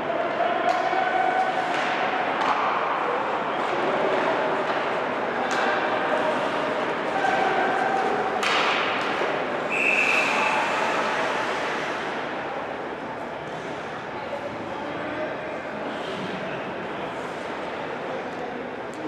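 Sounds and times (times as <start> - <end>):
puck and sticks knocking: 8.4 - 9.3.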